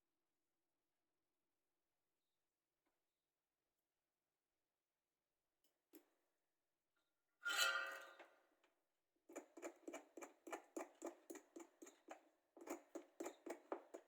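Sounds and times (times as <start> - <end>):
tool scraping circuit board: 9.3 - 14.0.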